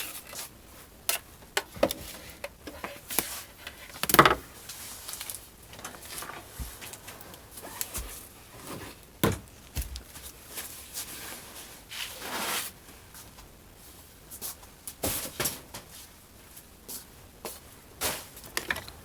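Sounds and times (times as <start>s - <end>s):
brushing rustle: 9.9s - 13.4s
handling clicks and knocks: 18.4s - 19.0s.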